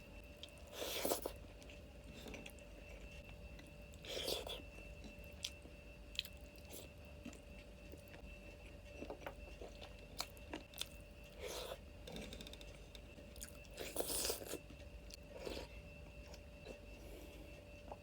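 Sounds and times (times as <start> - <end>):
chewing and crunching food: 0.0 - 18.0
faint steady hum: 0.0 - 18.0.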